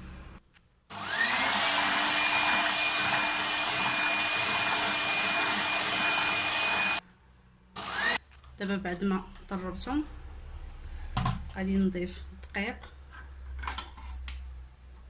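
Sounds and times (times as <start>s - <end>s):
electric mixer whining: 0.9s - 7.0s, 7.8s - 8.2s.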